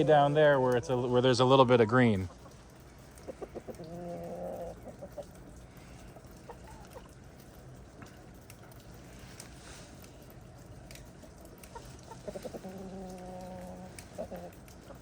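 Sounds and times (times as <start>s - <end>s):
chicken clucks: 3.2s - 5.5s, 6.2s - 7.2s, 11.7s - 15.0s.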